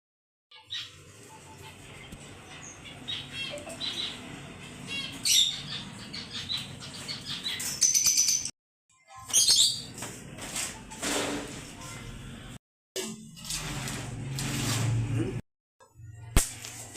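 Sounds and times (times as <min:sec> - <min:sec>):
birds chirping and calling: 0:00.5 - 0:08.5, 0:09.3 - 0:10.0.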